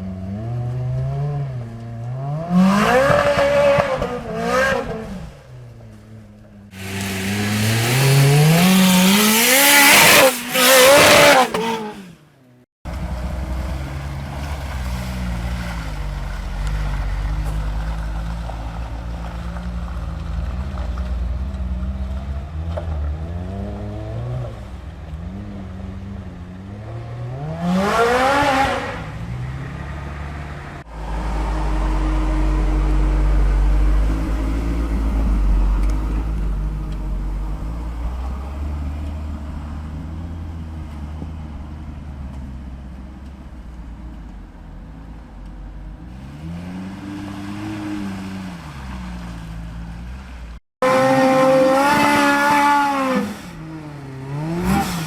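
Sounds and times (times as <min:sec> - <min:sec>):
car engine revving: 0:00.0 - 0:05.3, 0:06.8 - 0:12.3, 0:25.3 - 0:40.6, 0:45.9 - 0:55.0.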